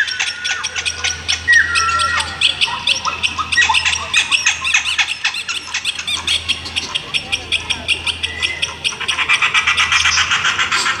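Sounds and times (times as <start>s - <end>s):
jungle birds chirping and squawking: 0.0s - 11.0s.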